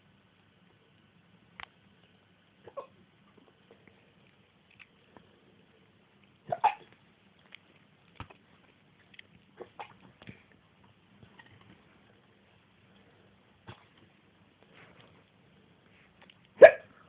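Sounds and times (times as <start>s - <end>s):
person hiccuping: 6.5s - 6.9s.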